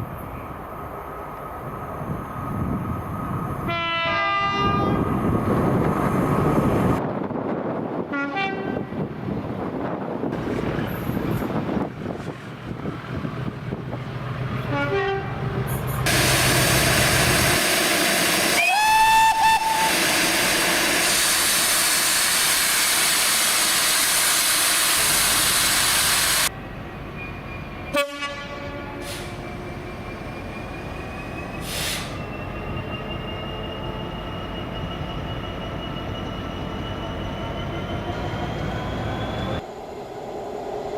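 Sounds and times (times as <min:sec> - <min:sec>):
train passing at speed: 0:00.0 - 0:40.9
train horn blast: 0:03.6 - 0:05.1, 0:08.1 - 0:09.0, 0:14.6 - 0:15.8, 0:18.6 - 0:20.0, 0:27.9 - 0:29.3
train whine rising in pitch: 0:16.1 - 0:24.2, 0:28.9 - 0:40.9.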